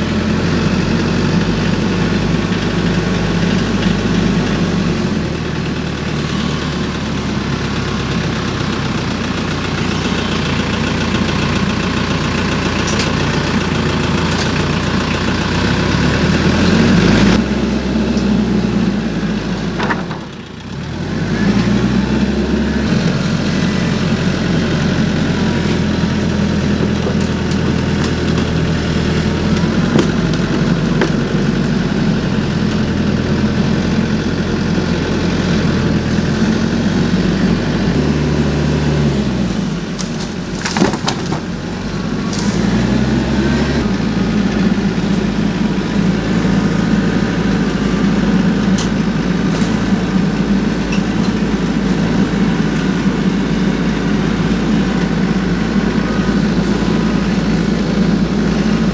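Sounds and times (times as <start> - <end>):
tractor engine running: 0.0 - 58.9
sharp crack: 40.0 - 41.6.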